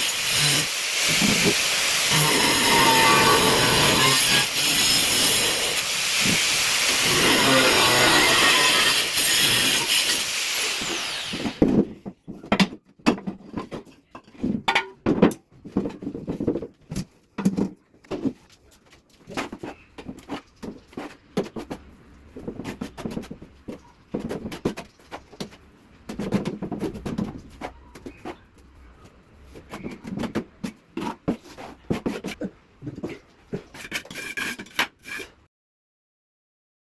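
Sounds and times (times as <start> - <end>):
power tool cutting tile: 0.0 - 11.8.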